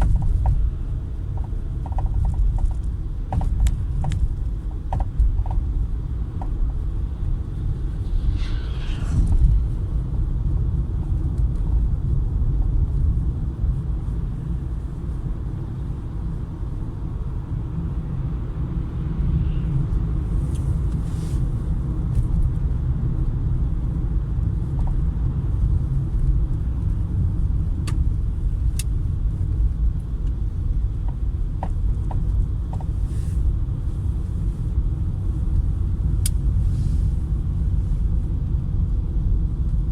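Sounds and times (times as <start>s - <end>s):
car road rumble: 0.0s - 39.9s
knocks and clicks from car: 1.4s - 5.7s, 31.0s - 33.0s.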